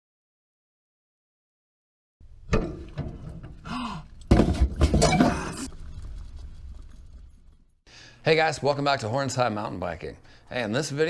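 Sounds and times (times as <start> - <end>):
thunk: 2.5 - 3.6, 4.3 - 5.3.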